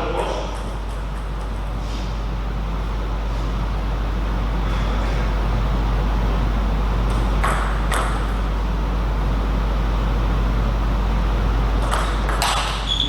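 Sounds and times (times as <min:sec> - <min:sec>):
steady hum and hiss: 0:00.0 - 0:13.0
table tennis ball clicking: 0:11.8 - 0:12.8.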